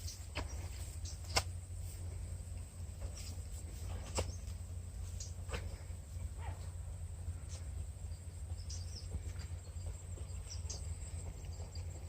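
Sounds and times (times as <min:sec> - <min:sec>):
bird chirps: 0:08.1 - 0:12.0.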